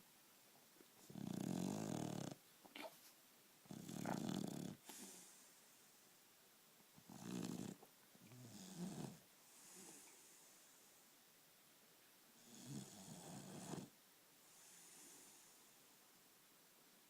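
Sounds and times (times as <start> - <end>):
quiet breathing: 0.9 - 6.2, 7.0 - 11.2, 12.3 - 16.0
dog snoring: 1.0 - 2.4, 3.7 - 5.2, 7.1 - 10.0, 12.4 - 13.9
soft hissing breath: 3.8 - 6.1, 7.0 - 11.2, 12.4 - 16.0.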